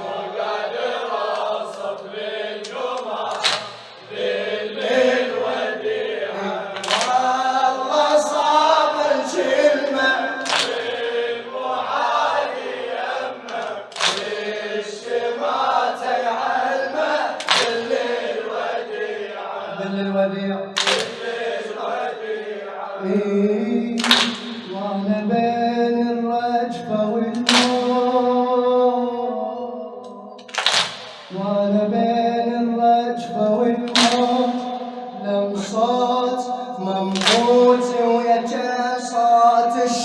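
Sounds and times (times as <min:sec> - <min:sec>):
men chanting together: 0:00.0 - 0:29.1, 0:30.8 - 0:40.0.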